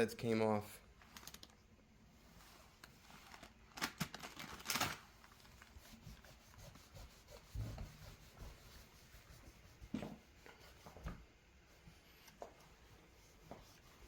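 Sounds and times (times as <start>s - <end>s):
cloth wiping a chair: 2.0s - 3.2s, 5.0s - 14.0s.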